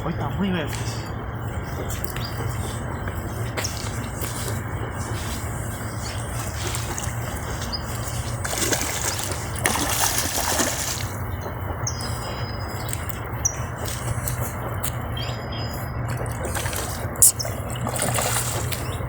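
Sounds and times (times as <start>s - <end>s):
water splashing: 2.0s - 15.1s, 15.8s - 19.0s
high bird chirps: 10.5s - 17.9s.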